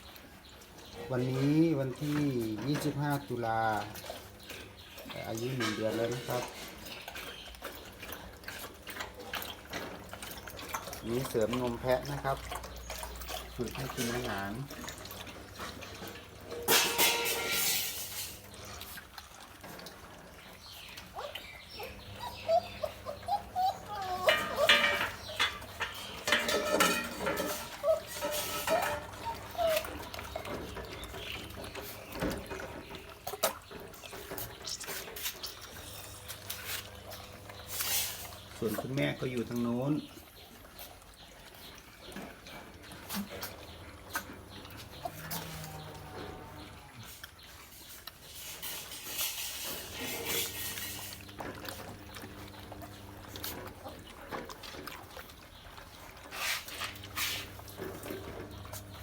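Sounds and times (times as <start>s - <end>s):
puppies lapping milk: 0.0s - 59.0s
puppy squeaks: 21.2s - 25.6s, 27.5s - 30.1s.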